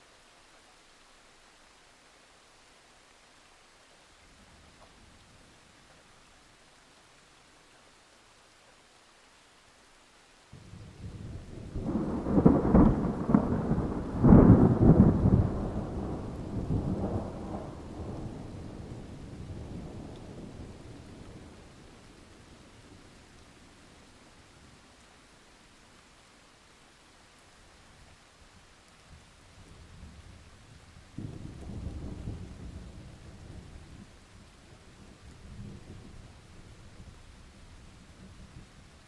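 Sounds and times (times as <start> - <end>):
rain hiss: 0.0 - 39.0
thunder rumbling: 10.6 - 22.1.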